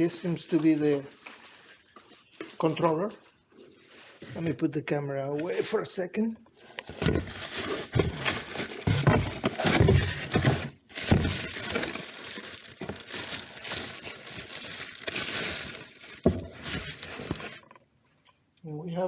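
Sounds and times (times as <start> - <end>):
rustling and crackling: 0.0 - 4.5, 6.5 - 18.5
knocks and clatters: 6.9 - 12.0.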